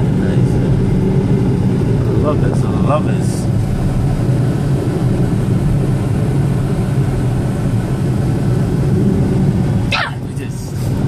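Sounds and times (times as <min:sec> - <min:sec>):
car engine rumble: 0:00.0 - 0:11.0
road noise in car cabin: 0:00.0 - 0:11.0.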